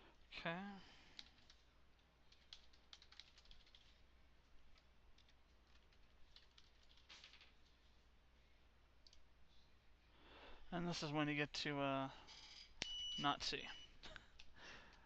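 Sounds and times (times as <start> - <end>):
computer keyboard typing: 1.2 - 4.0, 4.7 - 7.3.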